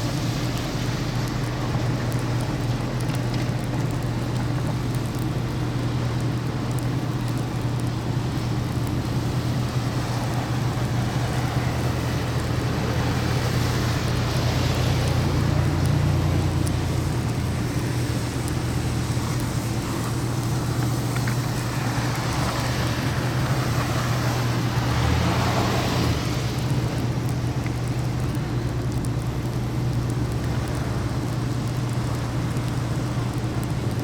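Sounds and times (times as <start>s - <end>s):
car engine and tyre noise: 0.0s - 34.0s.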